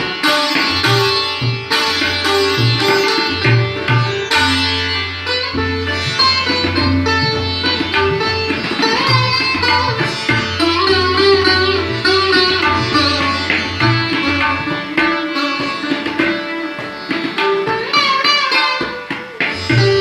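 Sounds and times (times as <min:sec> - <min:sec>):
sitar melody: 0:00.0 - 0:20.0
tabla: 0:00.0 - 0:20.0.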